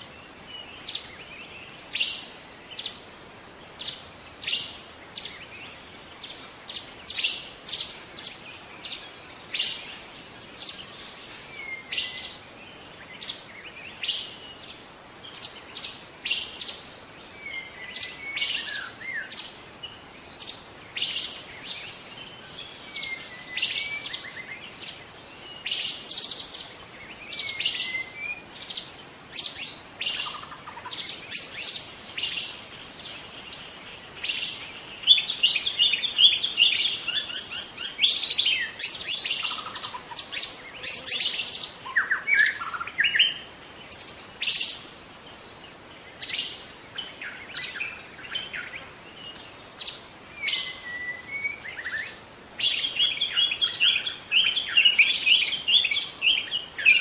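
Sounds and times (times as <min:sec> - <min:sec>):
bird gliding whistles: 0:50.4 - 0:53.8.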